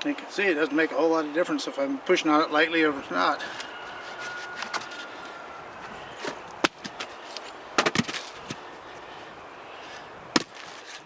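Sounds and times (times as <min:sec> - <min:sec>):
low steady hiss: 0:00.0 - 0:04.3.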